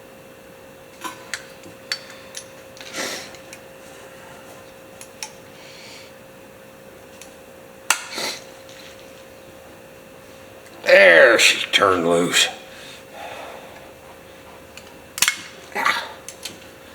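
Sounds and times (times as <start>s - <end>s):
hand tools tapping on metal: 1.0s - 3.6s.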